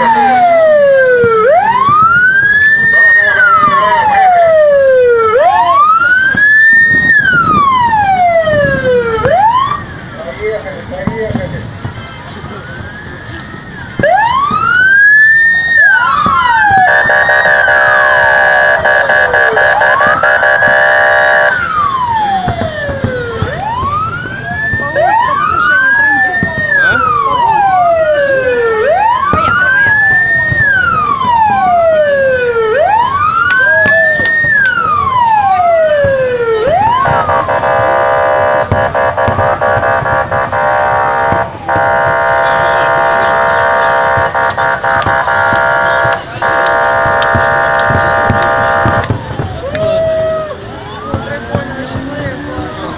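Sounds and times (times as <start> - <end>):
electronic siren wailing: 0.0 - 10.1, 14.0 - 49.5
many-toned siren blare: 0.0 - 10.6, 12.5 - 52.9.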